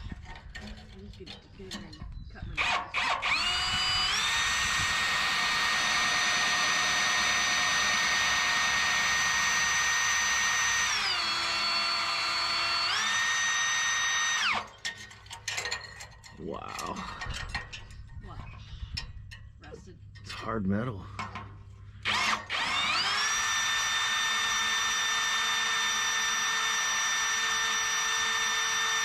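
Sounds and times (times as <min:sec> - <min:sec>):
electric drill whining: 0:02.6 - 0:14.8, 0:22.0 - 0:29.0.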